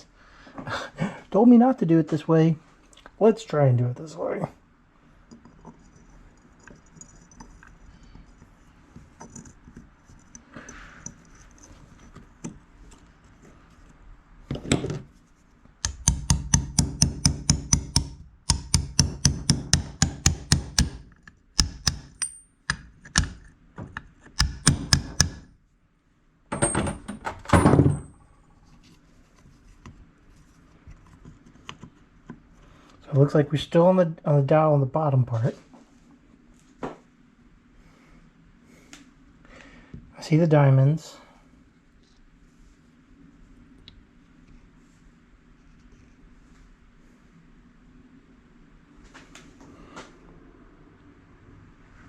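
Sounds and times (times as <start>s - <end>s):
metallic taps and knocks: 15.8s - 25.5s.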